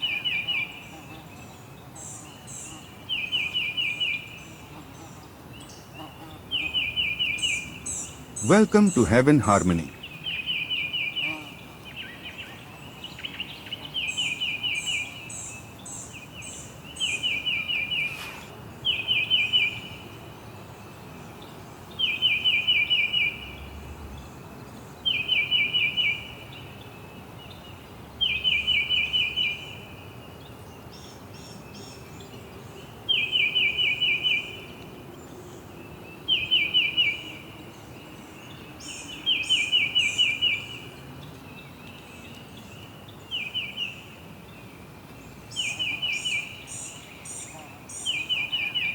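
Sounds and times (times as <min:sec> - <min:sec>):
bird chirping phrase: 0:08.4 - 0:10.0.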